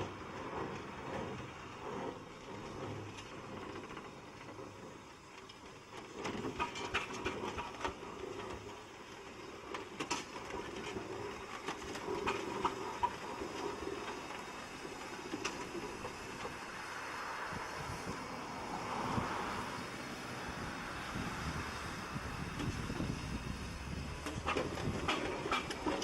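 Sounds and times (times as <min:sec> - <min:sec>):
steam roller running: 0:00.0 - 0:26.0
mechanical clanks and knocks: 0:24.0 - 0:26.0.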